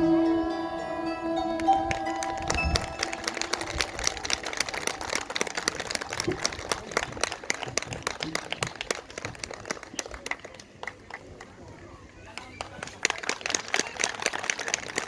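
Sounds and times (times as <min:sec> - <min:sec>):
bandura ensemble notes: 0:00.0 - 0:05.6
audience applauding: 0:01.4 - 0:11.2, 0:12.6 - 0:15.0.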